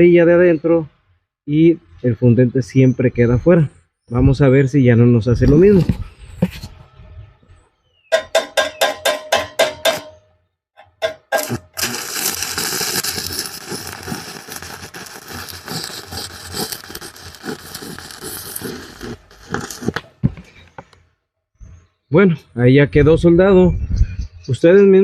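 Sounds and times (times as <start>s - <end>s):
electrode tapping on steel: 8.1s - 15.5s
welding arc crackling: 11.0s - 20.2s.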